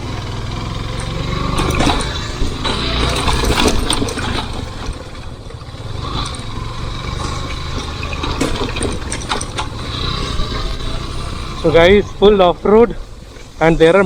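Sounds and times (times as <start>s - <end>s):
motorcycle engine running: 0.0s - 14.0s
sharp knocks: 1.0s - 5.0s.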